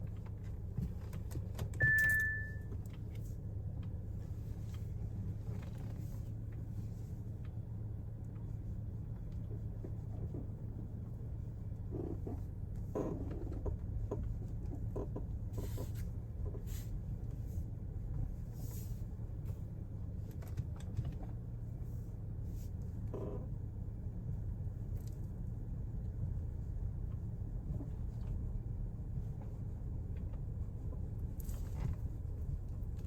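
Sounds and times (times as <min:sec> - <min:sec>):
low engine hum: 0:00.0 - 0:33.0
car creaks and squeaks: 0:11.9 - 0:13.7.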